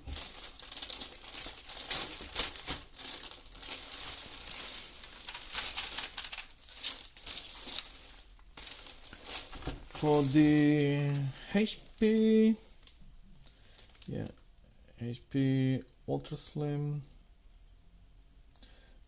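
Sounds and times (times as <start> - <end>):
plastic packaging crinkling: 0.0 - 14.4.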